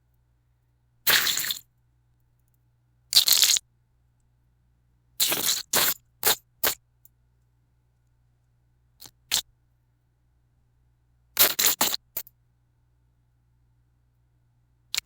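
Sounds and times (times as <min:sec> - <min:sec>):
wet gooey splats: 0:01.1 - 0:01.6.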